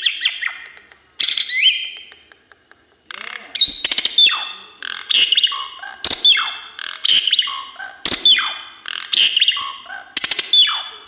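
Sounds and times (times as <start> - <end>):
starling singing: 3.1 - 11.0.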